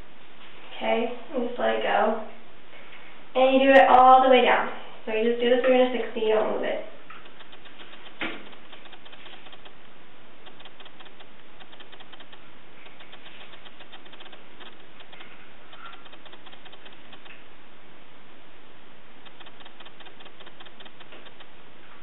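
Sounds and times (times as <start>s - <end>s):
sharp click: 7.1s - 17.4s, 19.2s - 21.6s.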